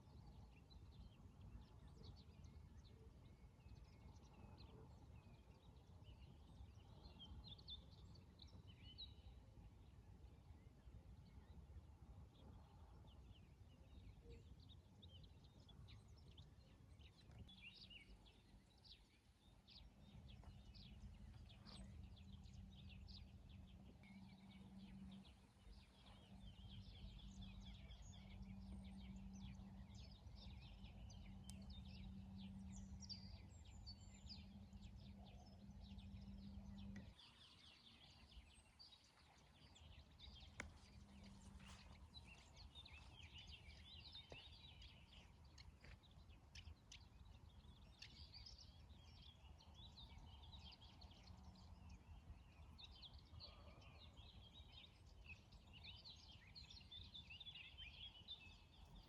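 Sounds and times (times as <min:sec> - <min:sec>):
small birds chirping: 0:12.4 - 0:59.0.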